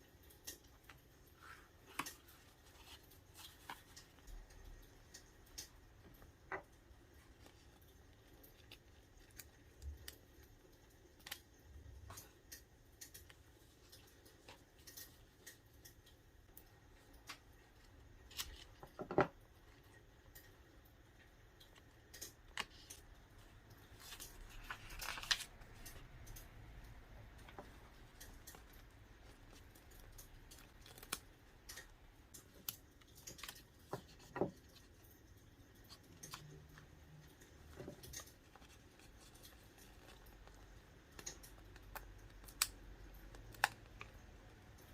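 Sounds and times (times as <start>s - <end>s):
small clicks and taps: 0.2s - 44.9s
paper rustling: 0.7s - 5.2s, 22.5s - 26.1s.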